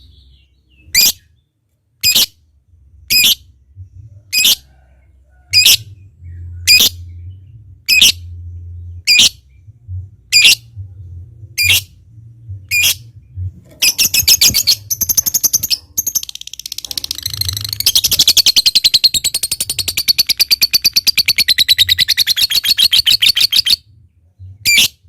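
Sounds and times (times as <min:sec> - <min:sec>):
lovebird clicking chatter: 0:13.8 - 0:23.8
lovebird shrill calls: 0:13.8 - 0:23.8.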